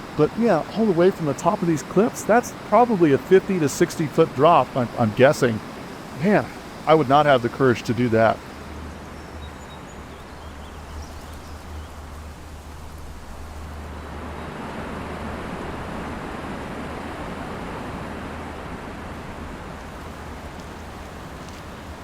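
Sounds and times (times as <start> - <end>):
waterfall rushing: 0.0 - 8.6.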